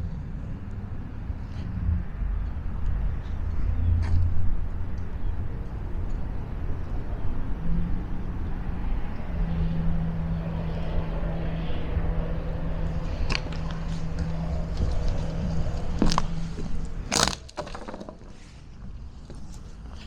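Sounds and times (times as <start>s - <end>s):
low outdoor rumble: 0.0s - 20.0s
motor humming: 6.8s - 17.6s.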